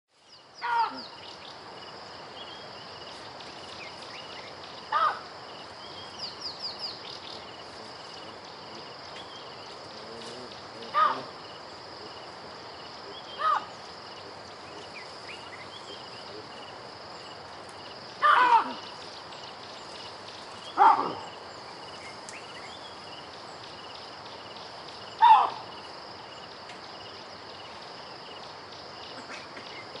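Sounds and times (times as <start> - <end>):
high insect drone: 0.1 - 30.0
small birds chirping: 0.1 - 30.0
bird of prey screaming: 4.9 - 5.2, 10.9 - 11.3, 13.4 - 13.7, 18.2 - 18.9, 25.2 - 25.7.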